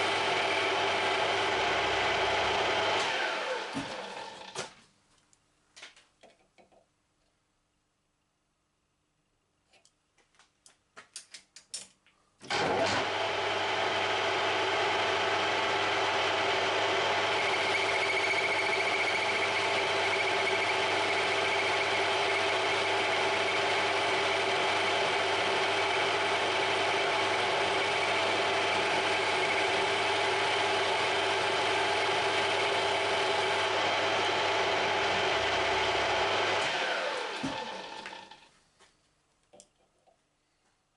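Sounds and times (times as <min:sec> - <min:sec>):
lathe motor whining: 0:00.0 - 0:04.6, 0:12.5 - 0:38.5.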